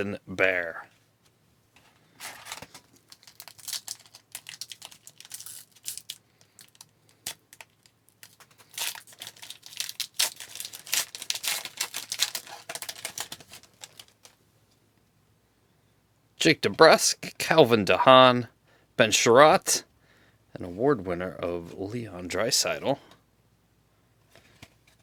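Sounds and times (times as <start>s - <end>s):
wrapper tearing and crinkling: 2.2s - 14.4s.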